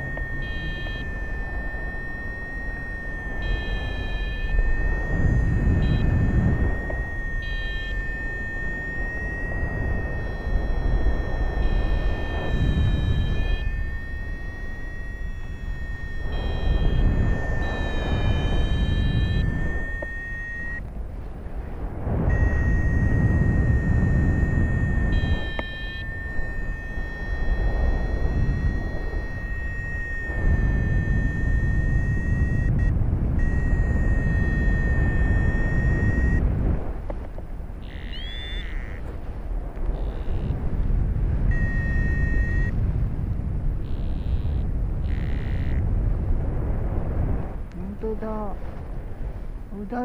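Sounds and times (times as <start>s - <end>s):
steady high thin tone: 0.0s - 20.9s, 22.1s - 36.4s, 37.8s - 40.7s, 41.4s - 42.8s
wind buffeting microphone: 0.0s - 50.0s.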